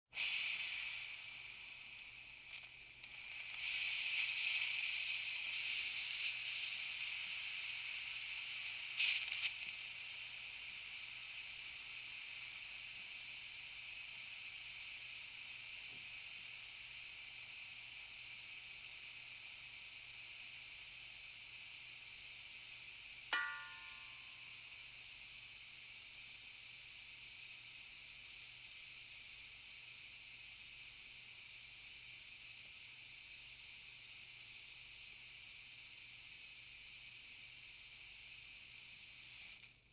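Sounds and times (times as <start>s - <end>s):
pressurised gas hissing: 0.1s - 39.9s
short ping: 23.3s - 24.5s.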